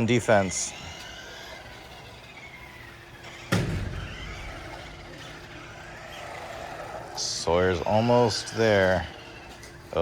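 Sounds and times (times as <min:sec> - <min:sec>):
toy car thump: 0:03.3 - 0:05.6.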